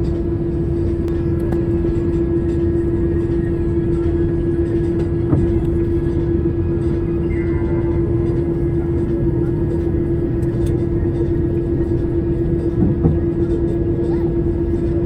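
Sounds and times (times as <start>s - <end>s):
jet engines droning in cabin: 0.0s - 15.0s.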